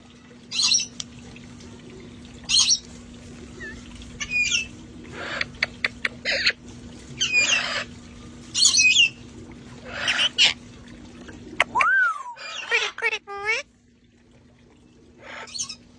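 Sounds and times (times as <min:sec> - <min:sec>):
parrots squawking: 0:03.6 - 0:06.6, 0:07.2 - 0:07.9, 0:09.8 - 0:10.6, 0:12.4 - 0:13.6, 0:15.2 - 0:15.8.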